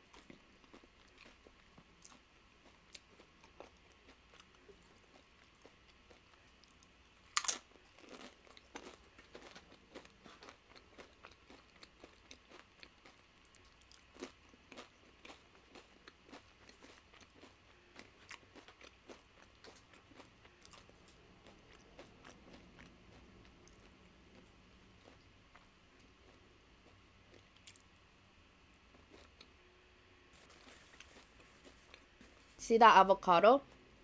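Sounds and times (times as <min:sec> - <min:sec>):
chewing chips: 0:00.0 - 0:28.0, 0:28.8 - 0:29.6, 0:30.4 - 0:32.6
sharp crunching bite: 0:07.3 - 0:12.6.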